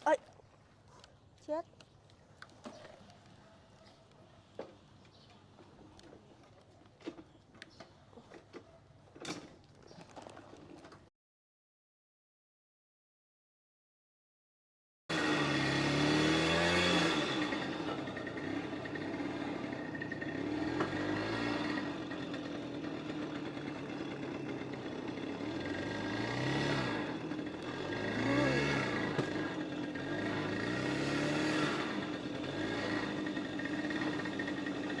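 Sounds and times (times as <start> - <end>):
two-stroke moped engine revving: 15.1 - 35.0.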